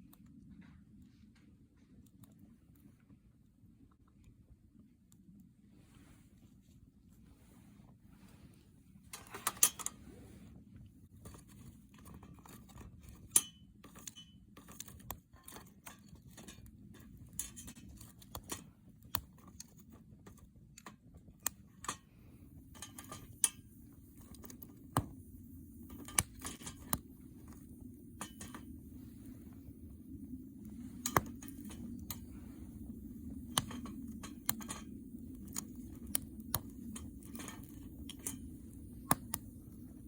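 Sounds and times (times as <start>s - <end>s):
low rumble of flames: 7.0s - 40.0s
campfire crackling and popping: 21.4s - 40.0s.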